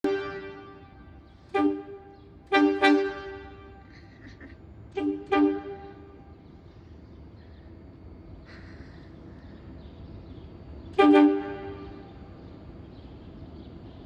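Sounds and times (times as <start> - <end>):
subway train horn toots: 0.0 - 4.1, 4.9 - 6.4, 10.9 - 12.4
low steady rumble: 0.0 - 14.0.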